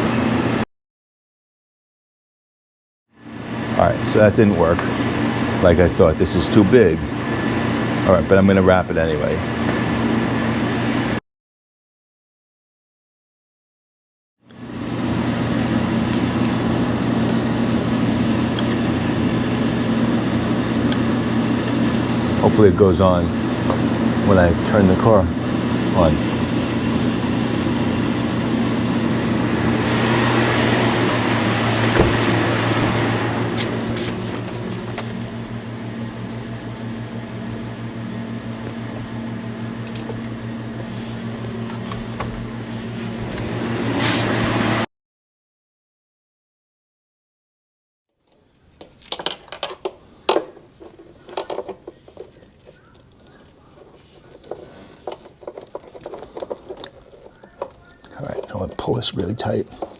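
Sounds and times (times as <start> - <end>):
motor humming: 14.5 - 44.8, 49.8 - 59.9
handling noise hiss: 29.5 - 35.3
single knock: 32.0 - 32.4
tape crinkling and rustling: 48.3 - 59.9.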